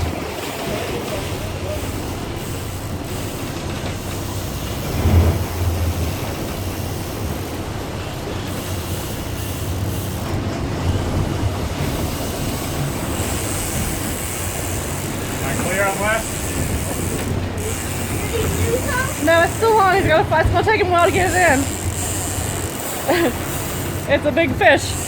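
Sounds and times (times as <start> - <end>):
boat engine humming: 0.0 - 25.0
water noise: 0.0 - 25.0
wind: 0.0 - 25.0.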